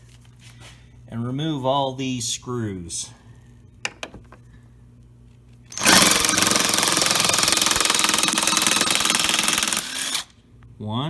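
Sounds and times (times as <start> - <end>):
power driver buzzing: 5.7 - 10.4.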